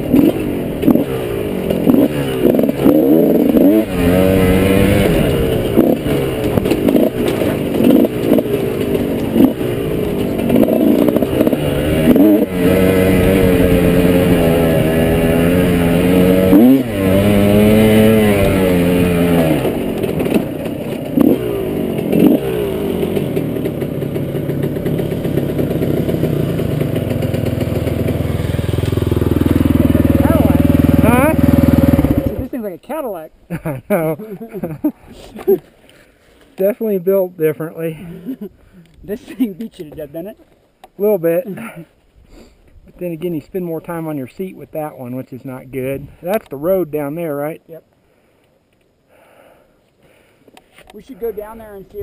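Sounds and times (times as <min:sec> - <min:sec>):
dirt bike engine revving: 0:00.0 - 0:32.6.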